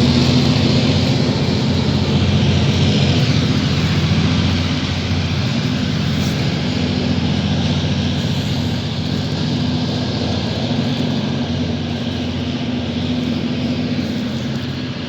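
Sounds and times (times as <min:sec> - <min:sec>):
train engine droning: 0:00.0 - 0:15.0
wide rumble: 0:00.0 - 0:15.0.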